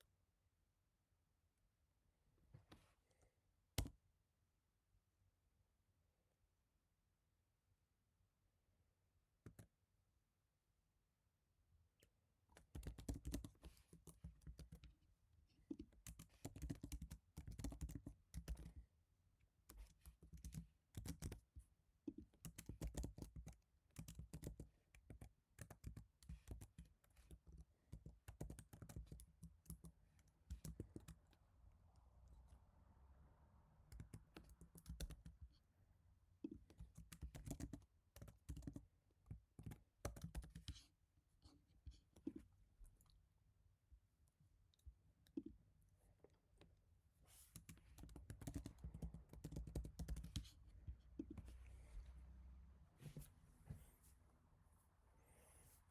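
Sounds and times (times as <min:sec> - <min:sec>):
soft keyboard typing: 0:09.4 - 0:09.8, 0:12.0 - 0:15.0, 0:15.7 - 0:18.9, 0:19.6 - 0:31.4, 0:33.8 - 0:35.6, 0:36.4 - 0:40.9, 0:47.4 - 0:51.6.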